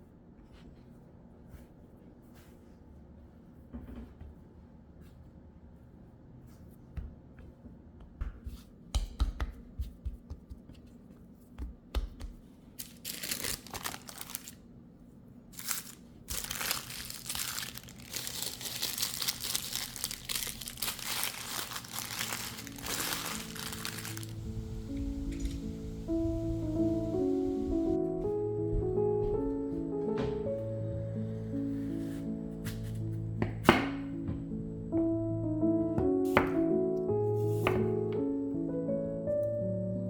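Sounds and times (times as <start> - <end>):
wrapping crinkling and rustling: 12.8 - 14.7, 15.4 - 25.7.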